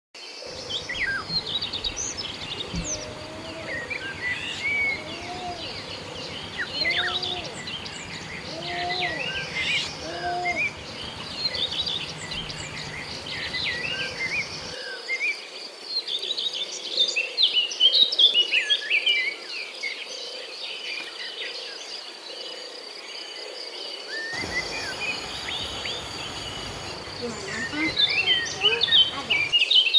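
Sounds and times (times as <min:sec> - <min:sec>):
birds chirping and trilling: 0:00.5 - 0:14.8, 0:24.4 - 0:29.6
high insect drone: 0:00.5 - 0:14.8, 0:24.4 - 0:29.5
low arching call: 0:00.5 - 0:14.8, 0:24.4 - 0:29.5.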